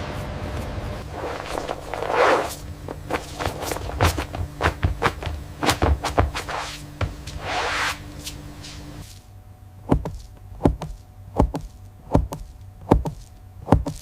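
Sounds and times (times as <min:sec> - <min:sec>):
noisy swish: 0:00.0 - 0:04.8, 0:05.6 - 0:09.1
steady low hum: 0:00.0 - 0:14.0
sharp knocks and clicks: 0:09.9 - 0:14.0.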